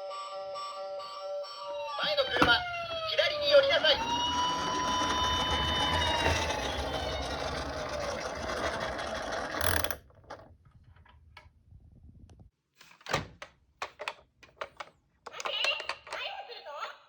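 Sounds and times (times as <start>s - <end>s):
toy siren: 0.0s - 8.1s
mechanical whirring: 2.0s - 10.3s.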